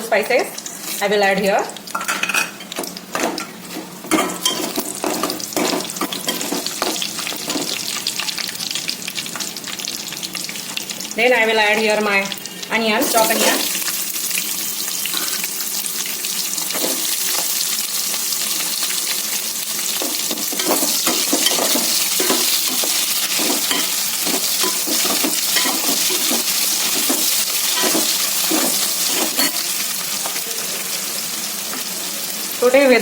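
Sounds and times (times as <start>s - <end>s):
onion sizzling in hot oil: 0.0s - 33.0s
spoon scraping a pan: 3.7s - 7.8s, 20.0s - 29.7s.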